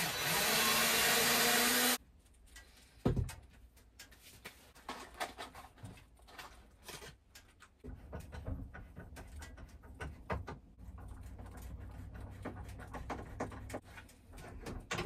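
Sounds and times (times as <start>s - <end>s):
wood and tools knocking: 7.8s - 15.0s.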